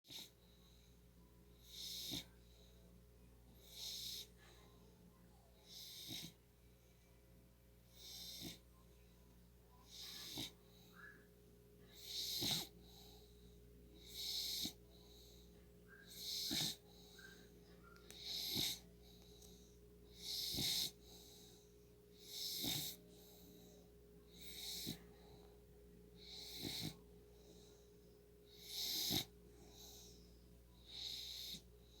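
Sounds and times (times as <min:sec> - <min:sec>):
pet snoring: 0:00.1 - 0:00.4, 0:01.6 - 0:02.4, 0:03.6 - 0:04.4, 0:05.6 - 0:06.4, 0:08.0 - 0:08.7, 0:09.8 - 0:10.8, 0:11.9 - 0:13.2, 0:14.0 - 0:15.4, 0:16.1 - 0:17.4, 0:18.1 - 0:18.9, 0:20.1 - 0:21.6, 0:22.2 - 0:23.5, 0:24.3 - 0:25.2, 0:26.2 - 0:27.1, 0:28.5 - 0:30.1, 0:30.9 - 0:32.0.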